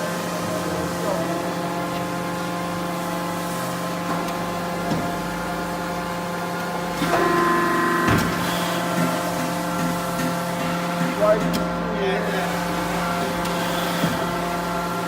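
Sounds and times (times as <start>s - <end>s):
press brake machine hum: 0.0s - 15.0s.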